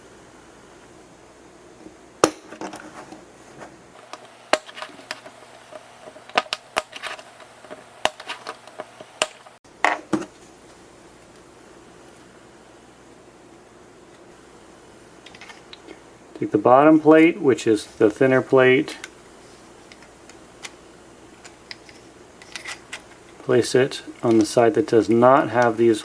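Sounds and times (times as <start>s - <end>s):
plastic parts clicking together: 4.0s - 9.6s.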